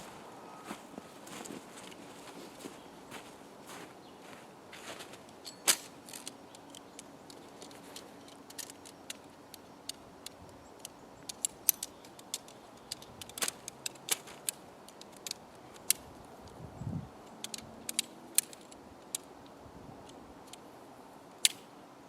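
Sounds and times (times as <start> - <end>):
tent poles clicking and rattling: 1.2 - 16.6, 17.2 - 20.7, 21.4 - 21.7
tent hardware snapping: 5.4 - 10.0, 11.2 - 16.1, 17.4 - 19.3, 21.4 - 21.6.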